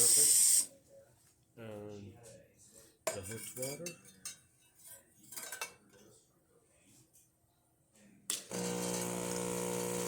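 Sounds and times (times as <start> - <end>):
hot water hissing: 0.0 - 0.7
pump buzzing hum: 8.5 - 10.0.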